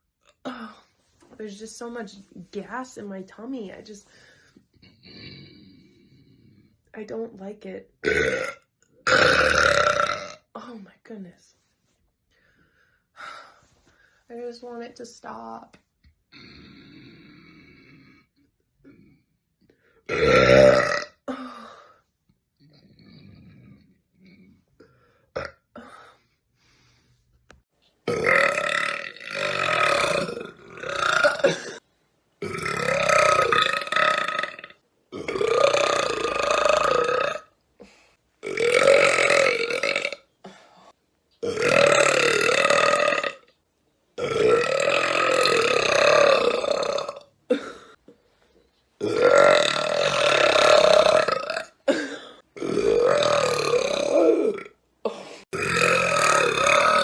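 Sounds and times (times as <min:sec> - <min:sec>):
woman burping: 0:00.4 - 0:00.8, 0:08.0 - 0:10.7, 0:20.1 - 0:21.8, 0:25.3 - 0:26.2, 0:28.1 - 0:31.8, 0:32.4 - 0:37.5, 0:38.4 - 0:40.7, 0:41.4 - 0:43.4, 0:44.2 - 0:48.1, 0:49.0 - 0:57.0.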